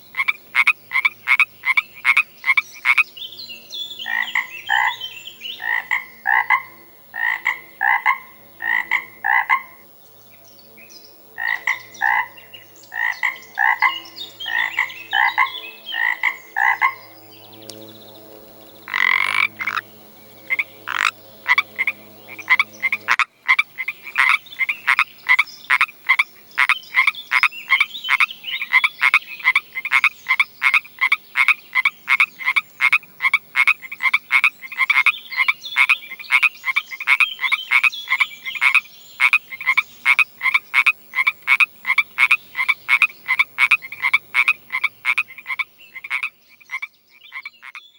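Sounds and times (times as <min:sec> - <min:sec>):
frogs croaking in chorus: 0:00.0 - 0:09.9, 0:11.4 - 0:17.3, 0:17.9 - 0:47.9
low steady hum: 0:00.0 - 0:33.8.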